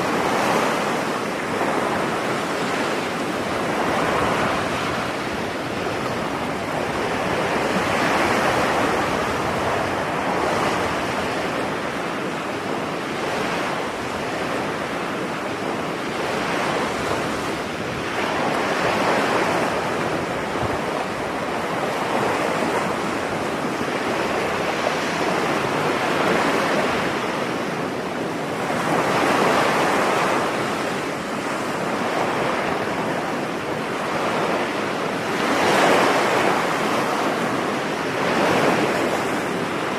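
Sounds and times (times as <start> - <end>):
ocean waves breaking on beach: 0.0 - 39.9
steady wind: 0.0 - 39.9.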